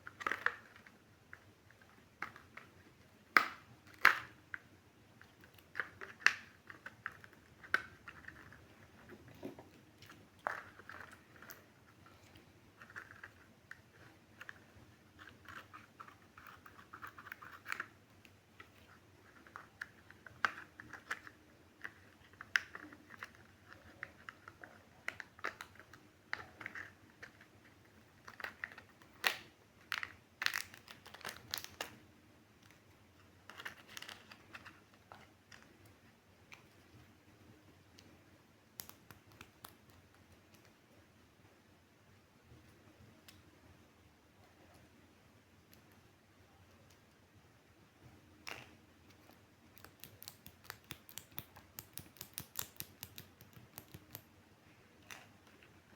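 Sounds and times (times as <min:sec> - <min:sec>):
sharp clicks and taps: 0:48.5 - 0:54.3.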